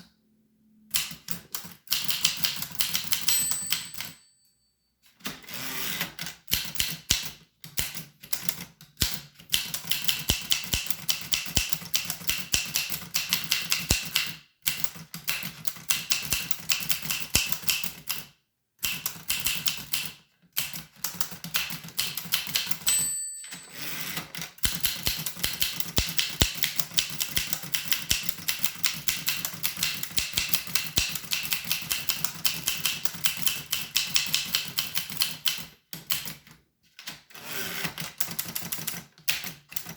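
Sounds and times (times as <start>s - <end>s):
typewriter key clicks: 0.9s - 4.2s, 6.4s - 18.2s, 24.6s - 36.5s
typewriter bell ringing: 2.9s - 5.9s, 22.7s - 28.4s.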